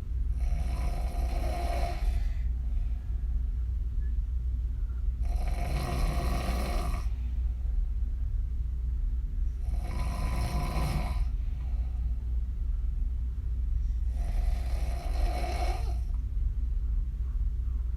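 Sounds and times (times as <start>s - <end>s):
steady low hum: 0.0s - 17.9s
woman snoring: 0.4s - 2.4s, 5.2s - 7.1s, 9.6s - 11.3s, 14.1s - 16.1s.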